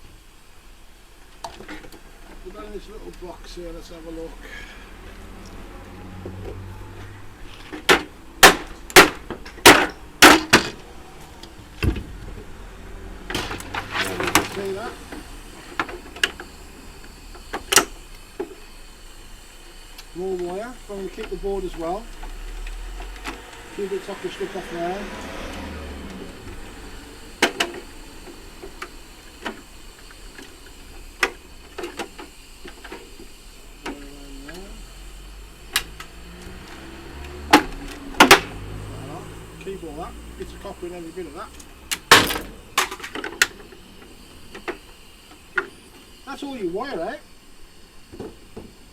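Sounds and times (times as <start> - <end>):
sharp clicks and snaps: 5.4 - 5.6, 35.6 - 38.6.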